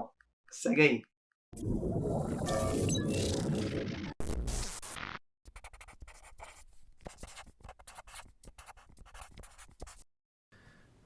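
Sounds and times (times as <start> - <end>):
pencil scratching on paper: 5.5 - 10.0.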